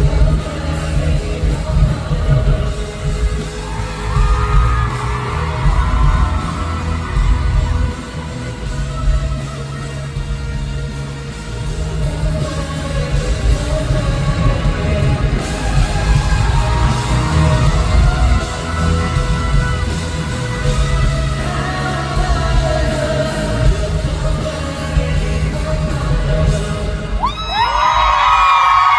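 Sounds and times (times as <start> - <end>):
loud live pop-rock music: 0.0 - 28.9
person singing: 0.0 - 28.9
crowd yelling: 3.1 - 10.3, 12.4 - 22.0, 27.0 - 28.9.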